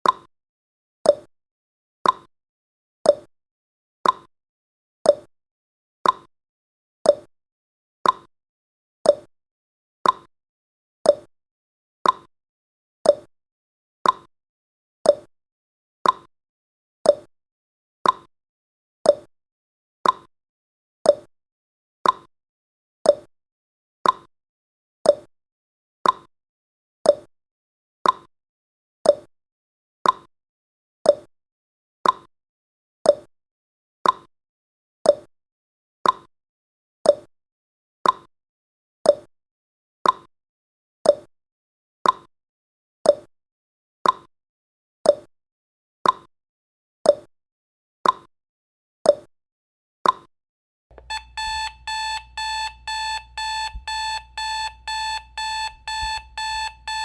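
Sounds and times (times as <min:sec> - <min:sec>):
timer ticking: 0:50.9 - 0:57.0
rapid electronic alarm beeping: 0:51.0 - 0:57.0.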